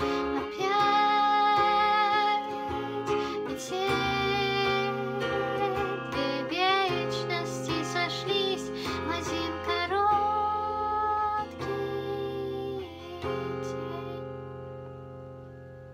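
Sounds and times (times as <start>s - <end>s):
guitar-backed song: 0.0s - 15.9s.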